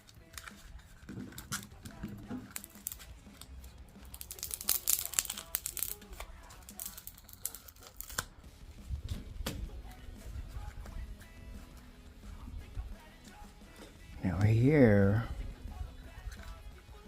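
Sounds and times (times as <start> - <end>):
adhesive tape ripping off plastic: 0.0 - 8.4.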